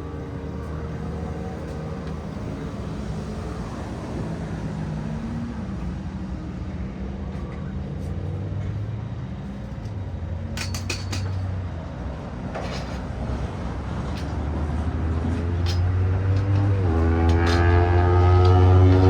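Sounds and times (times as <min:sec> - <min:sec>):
metal tools clinking: 0:10.6 - 0:11.5, 0:12.6 - 0:13.1, 0:15.3 - 0:16.7.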